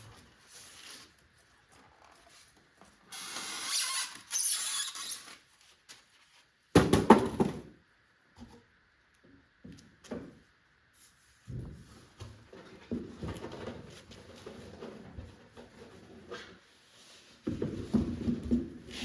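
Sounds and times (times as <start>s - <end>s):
loud knocks on box: 6.8s - 7.7s.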